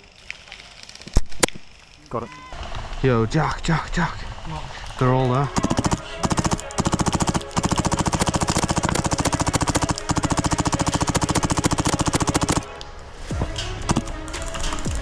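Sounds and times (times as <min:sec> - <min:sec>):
airsoft gun automatic fire: 0:05.5 - 0:12.8.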